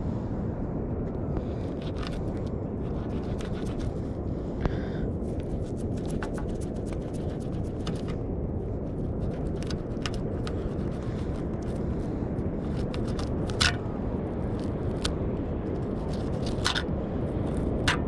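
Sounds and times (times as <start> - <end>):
steady low noise: 0.0 - 18.0
small sharp clicks and scrapes: 1.6 - 4.0, 5.4 - 8.2, 8.9 - 13.9, 14.5 - 15.2, 15.8 - 16.9.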